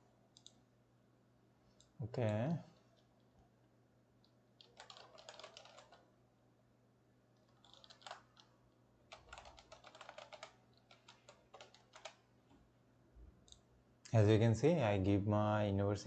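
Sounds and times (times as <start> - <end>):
low electrical hum: 0.0 - 16.0
keyboard typing: 4.6 - 6.1, 7.4 - 8.5, 9.1 - 12.2.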